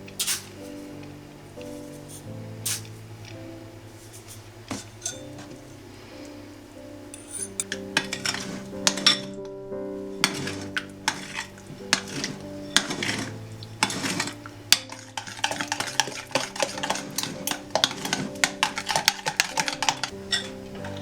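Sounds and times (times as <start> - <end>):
utensil clinking against a bowl: 4.2 - 5.6, 7.2 - 9.4, 10.2 - 21.0.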